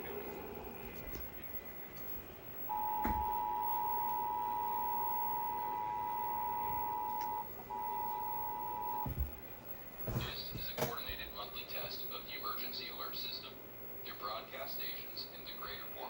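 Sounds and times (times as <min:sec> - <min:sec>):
two-tone alert signal: 0:02.7 - 0:09.1.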